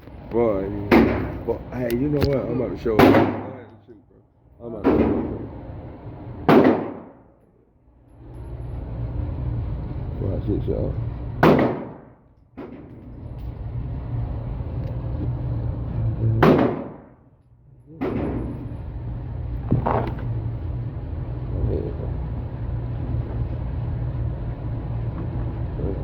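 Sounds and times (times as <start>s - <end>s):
low hum: 0.0s - 26.0s
gunshots: 6.5s - 7.2s, 11.4s - 12.1s, 16.4s - 17.1s.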